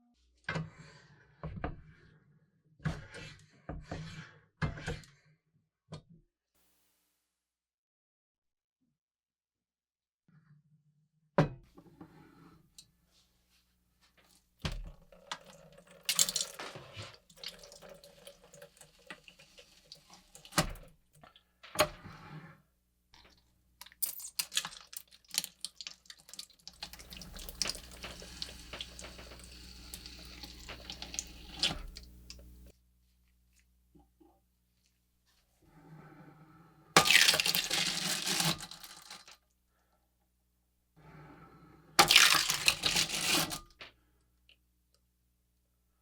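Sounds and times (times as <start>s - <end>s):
tap water running into sink: 14.6s - 20.9s, 23.8s - 32.7s.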